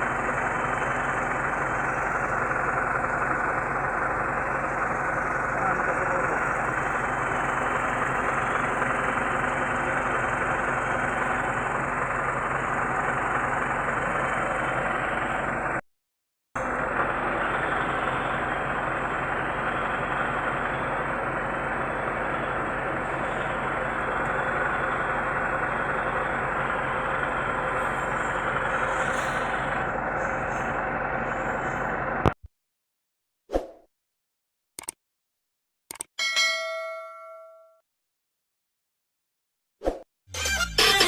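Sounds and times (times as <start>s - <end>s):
diesel truck engine idling: 0.0s - 15.8s, 16.6s - 32.3s.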